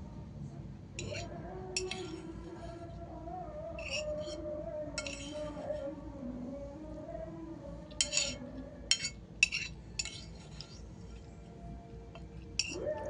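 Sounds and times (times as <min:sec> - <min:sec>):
faint background music: 0:00.0 - 0:13.0
cutlery clinking against plate: 0:01.8 - 0:02.2, 0:05.0 - 0:05.4, 0:08.0 - 0:10.8, 0:12.6 - 0:12.8.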